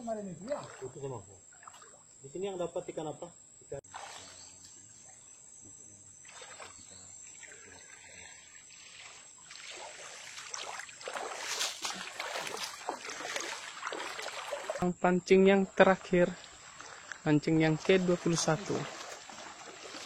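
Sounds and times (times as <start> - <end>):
water splashing and sloshing: 0.1 - 2.2, 3.8 - 4.5, 6.2 - 14.9, 15.7 - 20.0.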